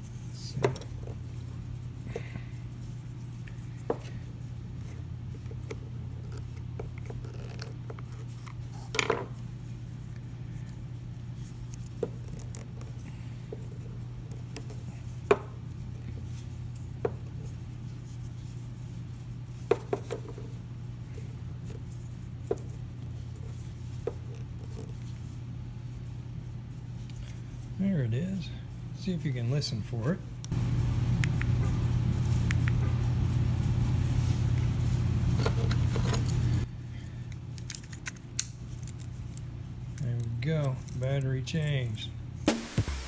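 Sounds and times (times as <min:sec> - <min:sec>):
steady low hum: 0:00.0 - 0:08.6, 0:20.6 - 0:37.7, 0:41.7 - 0:43.0.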